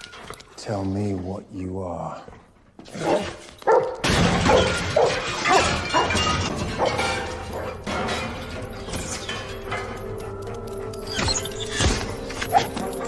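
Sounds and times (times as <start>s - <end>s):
dramatic background music: 6.1s - 13.0s.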